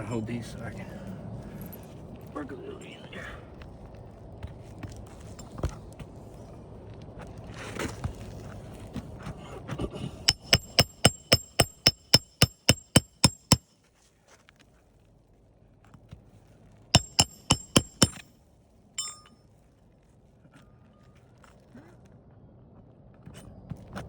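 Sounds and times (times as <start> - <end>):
hammer striking nails: 10.3 - 13.6, 17.0 - 18.2, 19.0 - 19.3.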